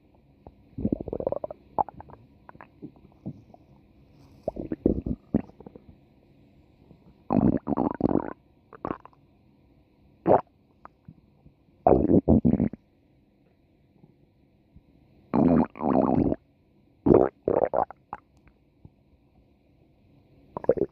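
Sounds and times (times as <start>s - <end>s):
stomach growling: 0.4s - 3.6s, 4.4s - 6.0s, 7.3s - 9.2s, 11.9s - 12.8s, 15.4s - 16.4s, 17.1s - 18.3s, 20.6s - 20.9s.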